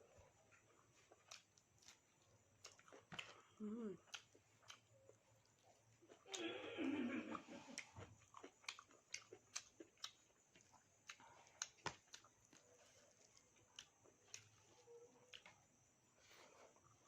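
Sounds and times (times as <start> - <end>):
chewing: 0.4 - 17.0.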